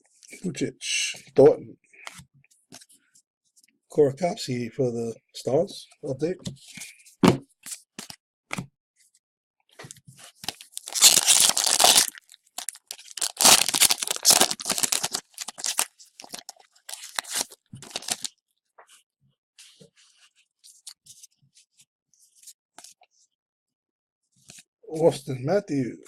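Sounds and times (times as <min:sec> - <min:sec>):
card pack wrapper ripping: 0:10.4 - 0:18.3
wrapper crinkling and rustling: 0:10.4 - 0:18.3.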